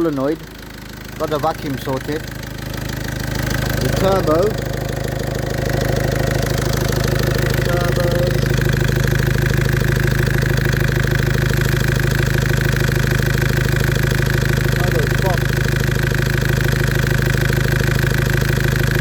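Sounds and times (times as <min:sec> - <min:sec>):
car engine idling: 0:00.0 - 0:19.0
faint high whine: 0:03.4 - 0:09.4.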